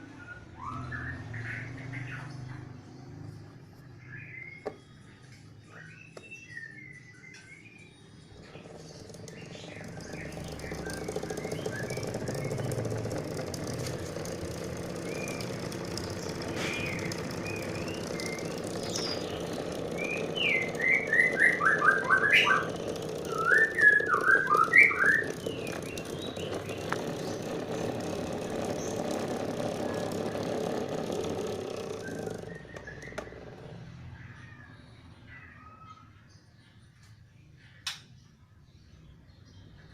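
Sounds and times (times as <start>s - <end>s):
electric fan humming: 8.0s - 34.3s.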